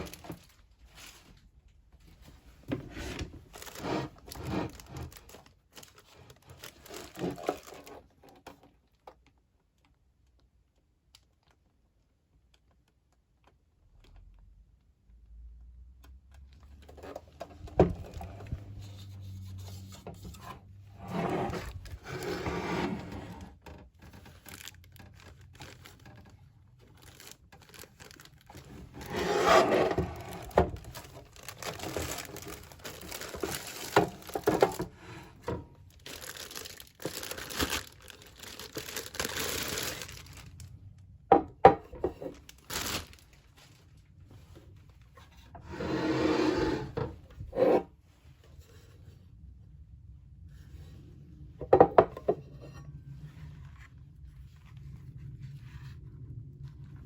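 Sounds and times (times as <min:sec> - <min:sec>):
packaging rustling and tearing: 0:00.0 - 0:01.2, 0:03.2 - 0:08.2, 0:24.0 - 0:40.8, 0:42.3 - 0:43.9.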